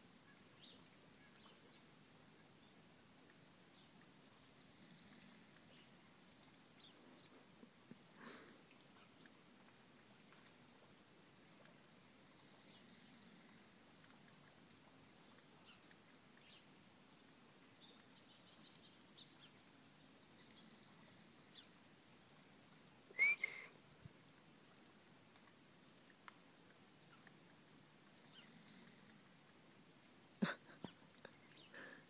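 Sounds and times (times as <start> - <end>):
faint bird chirps: 28.2 - 29.2.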